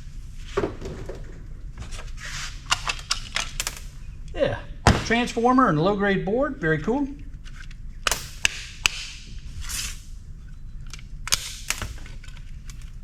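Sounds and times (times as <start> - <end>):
parts clicking and knocking: 0.5 - 4.0.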